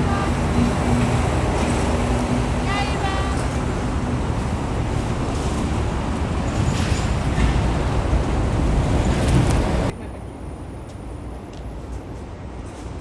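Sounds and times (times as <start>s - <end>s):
vehicle running rumble: 0.0s - 10.0s.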